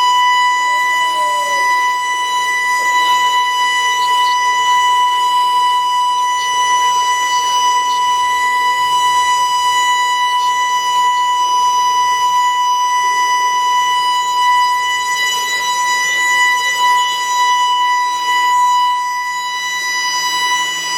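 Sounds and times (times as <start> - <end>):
continuous high-pitched alarm tone: 0.0 - 20.9.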